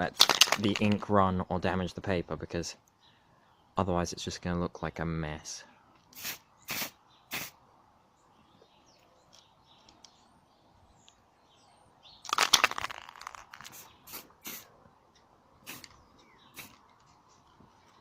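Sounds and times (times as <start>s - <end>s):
birds chirping: 0.6s - 18.0s
aerosol can spraying: 6.2s - 7.6s, 13.7s - 14.7s, 15.6s - 15.9s, 16.5s - 16.8s.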